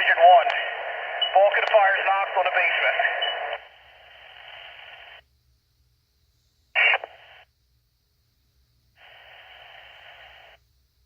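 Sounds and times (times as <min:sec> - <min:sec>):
radio noise burst: 0:00.0 - 0:05.2, 0:06.8 - 0:07.5, 0:09.0 - 0:10.6
radio static hiss: 0:00.0 - 0:05.3, 0:06.7 - 0:07.5, 0:09.0 - 0:10.6.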